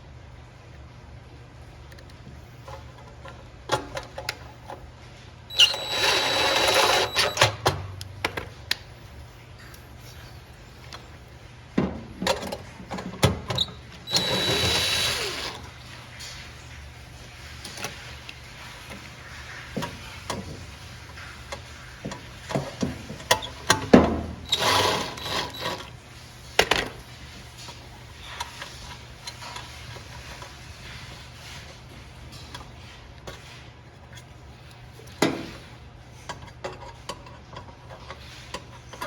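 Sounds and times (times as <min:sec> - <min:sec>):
cordless drill driving screws: 0:05.5 - 0:07.5, 0:14.0 - 0:15.7, 0:24.5 - 0:25.8.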